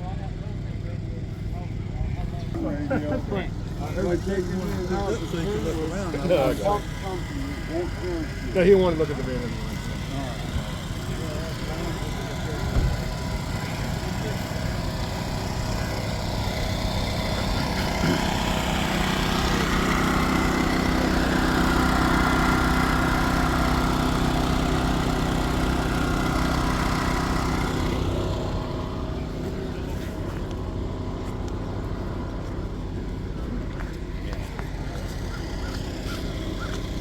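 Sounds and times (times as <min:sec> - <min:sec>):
vehicle engine humming: 0:00.0 - 0:37.0.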